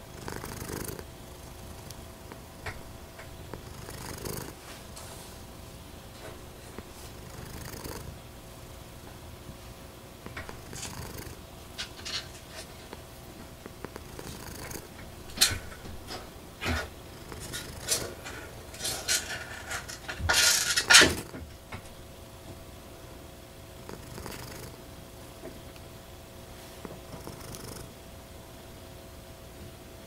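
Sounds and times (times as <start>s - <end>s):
cat purring: 0.0s - 4.6s, 6.8s - 8.2s, 10.2s - 13.0s, 13.6s - 21.4s, 23.7s - 24.8s, 27.0s - 28.0s
rustles and knocks: 10.3s - 22.0s.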